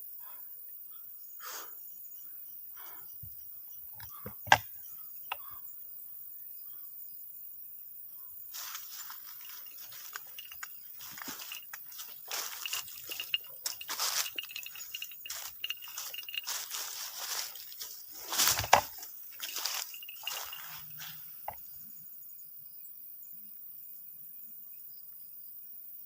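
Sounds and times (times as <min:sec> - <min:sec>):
rustling and crunching: 0:08.5 - 0:21.7.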